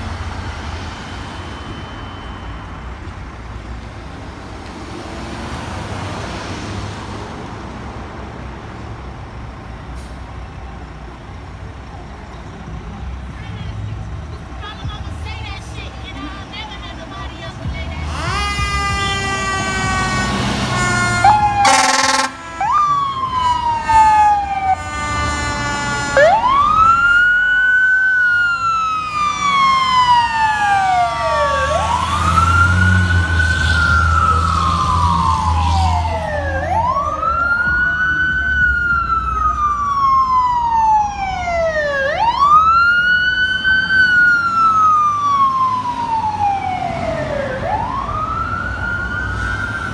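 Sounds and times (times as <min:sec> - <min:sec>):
fire engine air horn: 0:17.0 - 0:37.8
siren wailing: 0:17.6 - 0:49.9.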